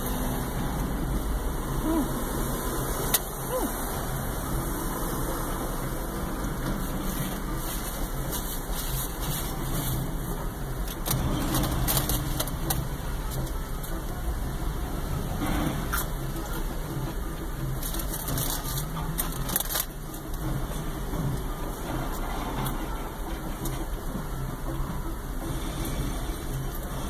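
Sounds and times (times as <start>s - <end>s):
car engine idling: 0.0s - 27.0s.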